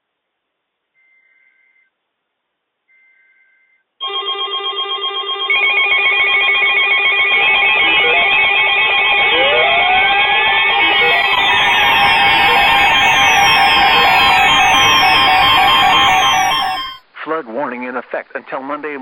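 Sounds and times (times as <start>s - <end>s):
digital data tones: 5.5s - 17.0s
electronic music with pulsing beat: 5.7s - 17.0s.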